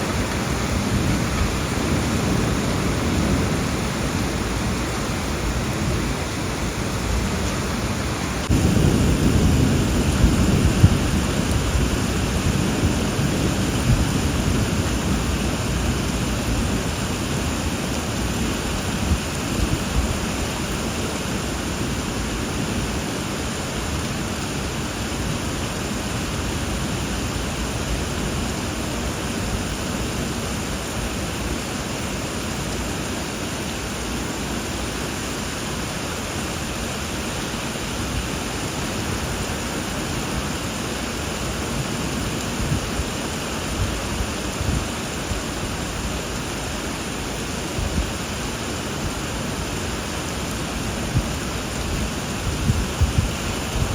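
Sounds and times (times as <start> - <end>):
low rumble of thunder: 0.0 - 20.6, 47.1 - 53.9
steady rain falling: 0.0 - 53.9.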